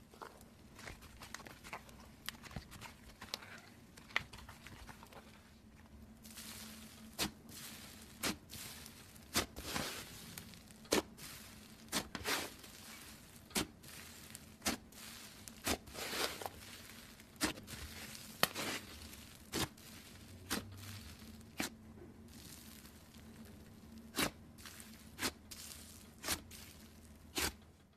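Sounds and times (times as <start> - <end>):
slime crackling and tearing: 6.2 - 27.6.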